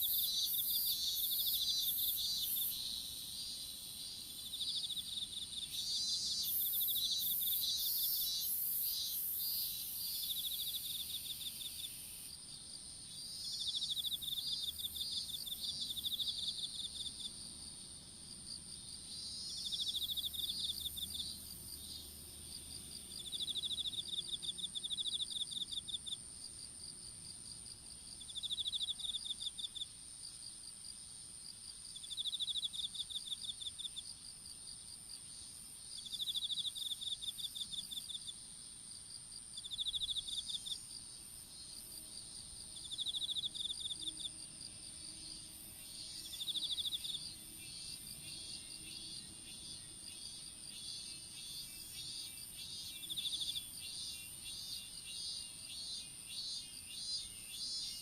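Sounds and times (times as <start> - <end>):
insects rapid pulsed trills: 0.0 - 12.3.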